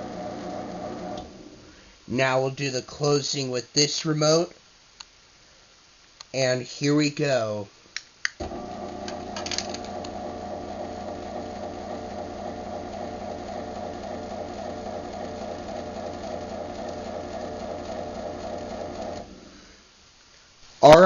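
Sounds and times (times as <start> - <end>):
garage door opener motor humming: 0.0 - 1.7, 8.4 - 19.7.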